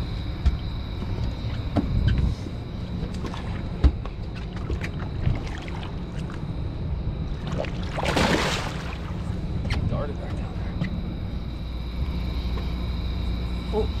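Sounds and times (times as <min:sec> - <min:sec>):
steady low rumble: 0:00.0 - 0:14.0
knocks and bumps on a boat: 0:00.4 - 0:02.4, 0:03.0 - 0:05.9.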